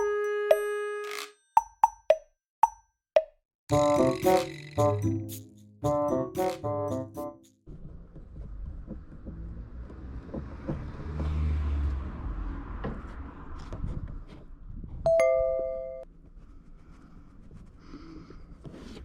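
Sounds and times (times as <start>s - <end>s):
car road and engine rumble: 7.7s - 15.0s.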